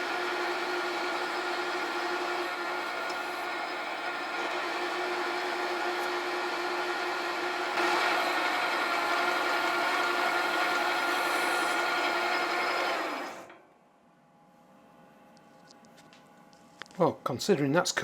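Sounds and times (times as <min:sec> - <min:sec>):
lathe motor whine: 0:00.0 - 0:13.6
lathe cutting hiss: 0:07.7 - 0:13.5.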